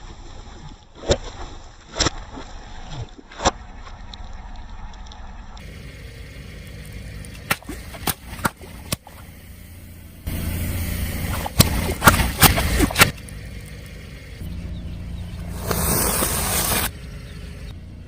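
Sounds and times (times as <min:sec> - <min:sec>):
car engine rumble: 0:03.6 - 0:18.0.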